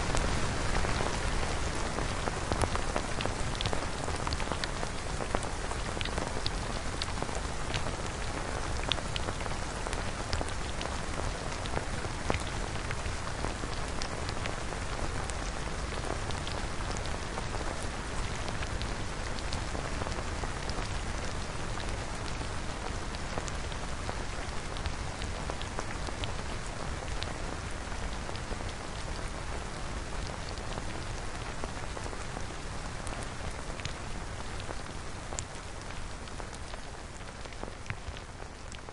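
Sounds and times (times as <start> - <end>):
hiss of falling rain: 0.0 - 38.9
raindrop ticks: 2.5 - 14.5.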